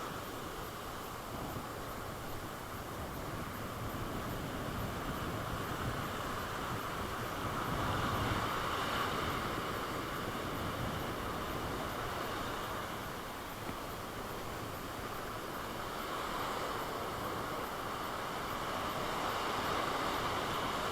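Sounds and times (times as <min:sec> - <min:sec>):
sea surf washing onto beach: 0:00.0 - 0:20.9
wind buffeting microphone: 0:01.2 - 0:15.3.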